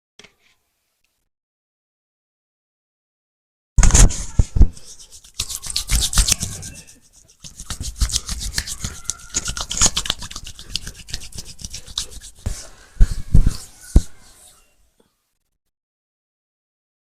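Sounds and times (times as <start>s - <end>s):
hands scratching over skin and hair: 3.8s - 14.5s.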